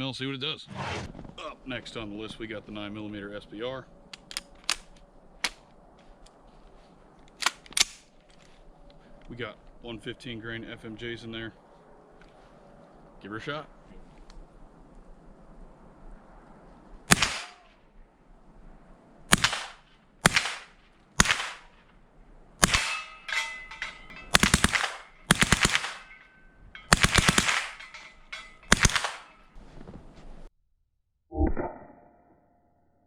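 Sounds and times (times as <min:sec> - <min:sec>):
rifle gunshots: 0:17.1 - 0:17.7, 0:19.3 - 0:21.8, 0:22.6 - 0:26.2, 0:26.8 - 0:29.4.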